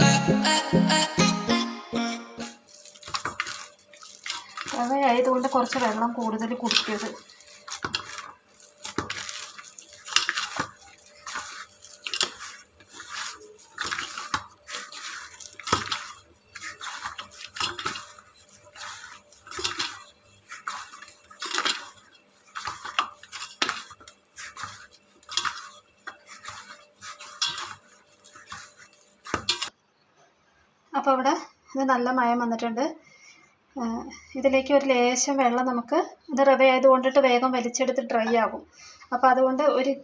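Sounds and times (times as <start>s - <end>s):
dough being kneaded by hand: 2.4s - 29.8s.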